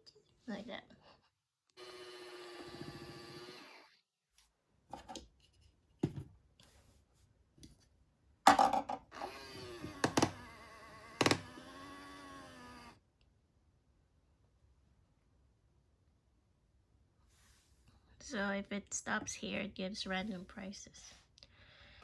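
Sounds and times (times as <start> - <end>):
small toy motor whining: 1.8 - 4.0, 9.1 - 13.0
plastic toy knocks and clicks: 9.9 - 10.5, 11.2 - 11.6.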